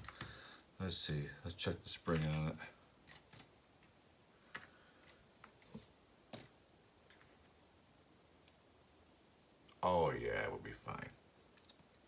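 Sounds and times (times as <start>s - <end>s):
faint clicks of plastic parts: 0.0s - 0.4s, 2.1s - 7.6s, 11.5s - 12.0s.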